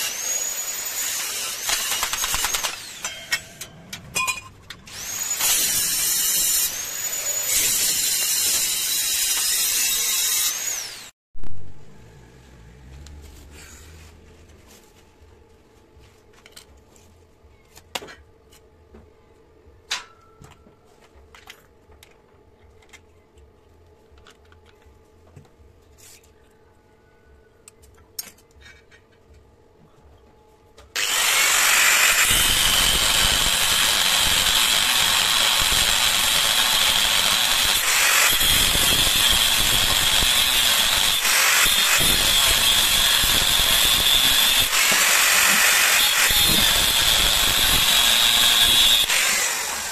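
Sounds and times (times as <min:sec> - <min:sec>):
electric power tool whining: 0:00.0 - 0:03.2, 0:04.9 - 0:11.2, 0:31.0 - 0:49.9.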